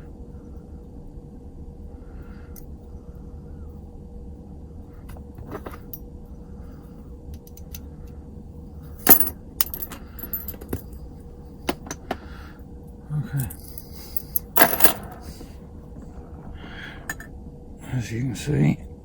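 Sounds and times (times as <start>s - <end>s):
metal lock parts clicking: 7.4s - 7.8s, 9.0s - 11.0s, 13.4s - 15.4s
sharp metal clatter: 9.0s - 10.8s, 13.6s - 15.4s.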